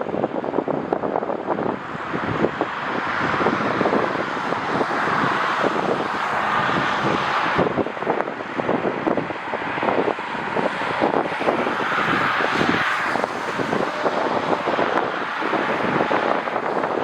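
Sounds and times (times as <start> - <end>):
jet engines roaring: 0.0 - 17.0
wind buffeting microphone: 0.0 - 17.0.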